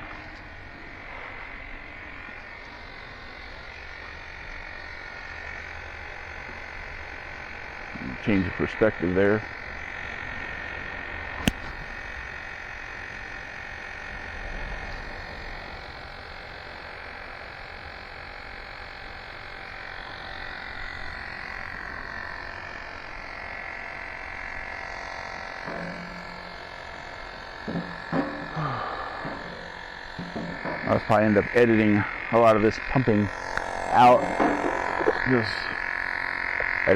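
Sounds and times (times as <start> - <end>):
tire inflator buzzing: 0.0 - 36.9
sharp click: 11.4 - 11.8.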